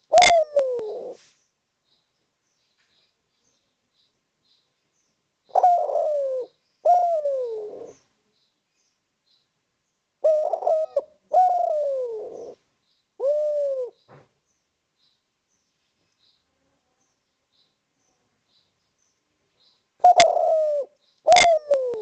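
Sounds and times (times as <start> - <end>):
dove cooing: 0.0 - 1.2, 5.5 - 8.1, 10.2 - 12.6, 13.2 - 14.0, 20.0 - 22.0.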